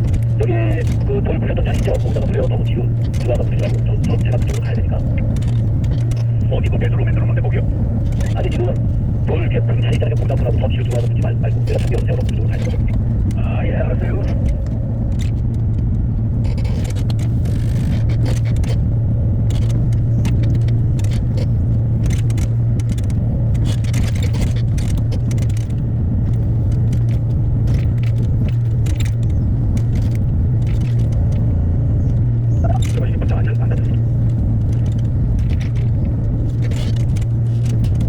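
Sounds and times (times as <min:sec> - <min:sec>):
excavator diesel engine running: 0:00.0 - 0:15.5.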